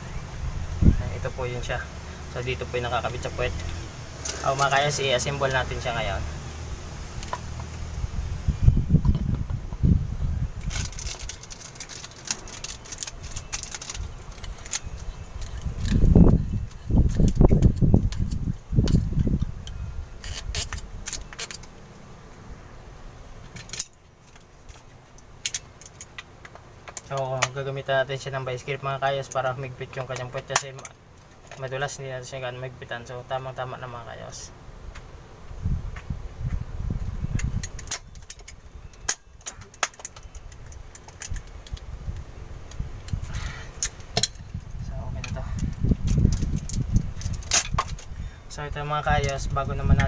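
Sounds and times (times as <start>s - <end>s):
hand tools clicking and knocking: 10.6s - 19.5s, 29.2s - 31.8s, 37.4s - 41.9s.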